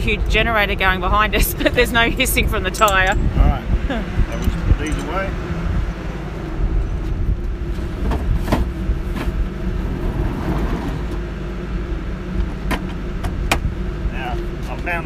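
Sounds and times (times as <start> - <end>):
generator humming: 0.0 - 15.0
tools clicking and clinking: 2.7 - 3.3, 4.3 - 5.2.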